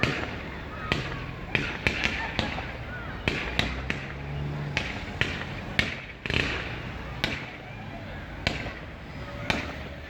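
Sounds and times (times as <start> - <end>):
fireworks bangs: 0.0 - 7.6.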